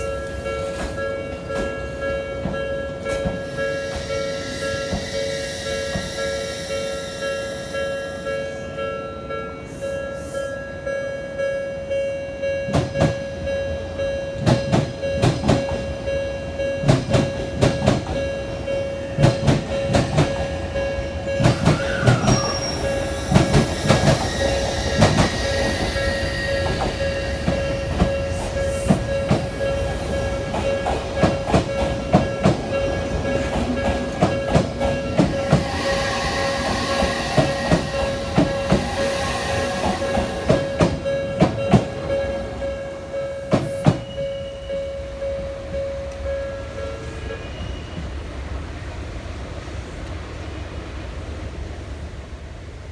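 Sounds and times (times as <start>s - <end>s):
level-crossing warning bell: 0.0s - 48.2s
train wheels clattering over rail joints: 19.2s - 20.6s, 26.6s - 35.8s.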